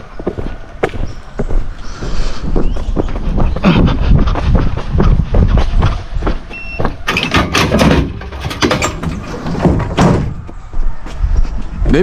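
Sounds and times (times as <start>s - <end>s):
truck engine and road rumble: 0.0s - 12.0s
truck body rattling: 6.5s - 10.6s.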